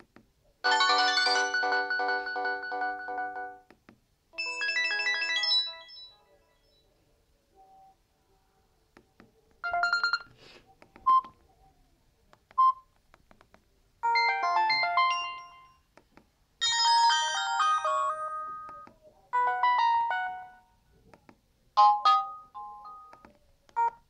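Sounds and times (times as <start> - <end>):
electronic ringtone melodies: 0.6 - 3.7, 4.4 - 6.8, 14.0 - 15.8, 16.6 - 20.7, 21.8 - 23.2
phone beeps: 9.6 - 10.3, 11.0 - 11.4, 12.6 - 12.8, 23.8 - 24.0.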